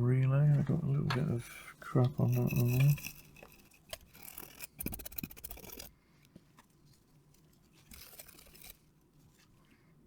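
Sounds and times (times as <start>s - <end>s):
scrubbing a circuit board: 1.9s - 5.9s, 7.5s - 8.9s.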